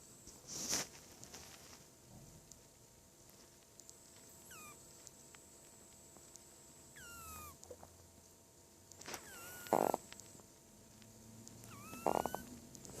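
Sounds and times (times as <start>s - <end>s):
kitten snoring: 4.4s - 4.8s, 7.0s - 7.8s, 9.1s - 10.1s, 11.5s - 13.0s.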